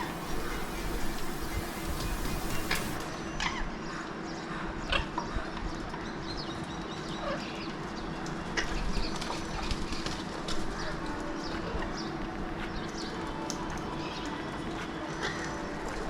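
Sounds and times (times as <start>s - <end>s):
parakeets calling: 0.0s - 3.1s
steady low hum: 0.0s - 3.1s.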